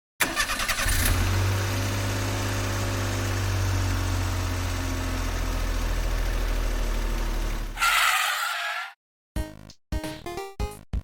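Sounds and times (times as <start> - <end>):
engine cranking: 0.2 - 1.2
engine idling: 1.8 - 7.8.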